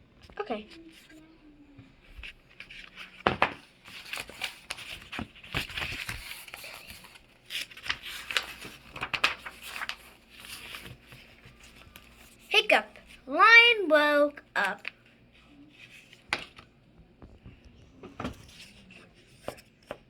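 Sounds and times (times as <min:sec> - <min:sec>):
paper rustling and crinkling: 0:02.0 - 0:13.2, 0:14.6 - 0:20.0
page turning: 0:02.2 - 0:12.5, 0:15.7 - 0:16.7.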